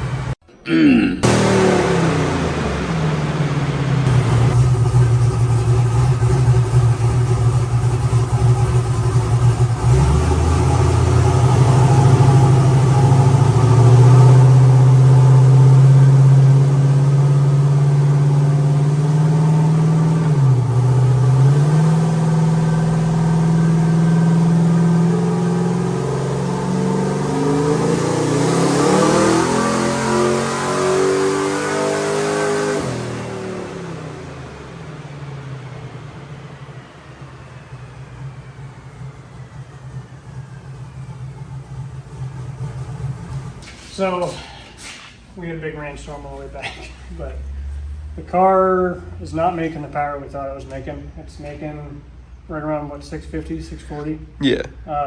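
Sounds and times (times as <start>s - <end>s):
engine running at high revs: 0.0s - 0.4s, 1.2s - 43.6s.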